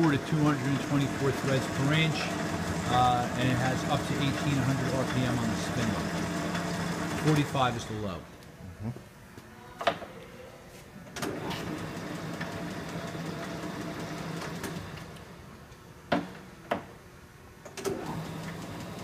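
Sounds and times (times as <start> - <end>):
lathe running with low hum: 0.0 - 8.3, 11.3 - 15.5, 17.8 - 19.0.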